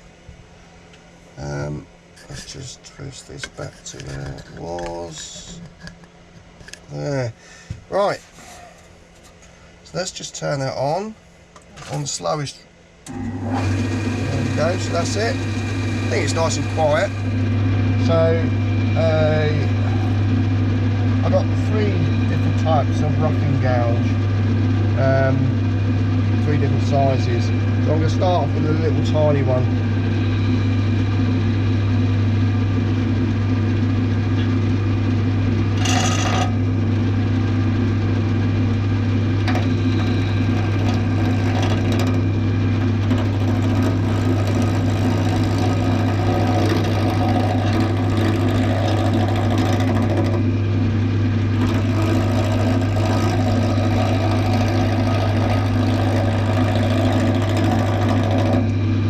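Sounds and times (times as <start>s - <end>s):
wood lathe humming: 13.0s - 59.0s
gouge cutting wood: 13.6s - 17.5s, 39.5s - 50.5s, 51.6s - 58.8s.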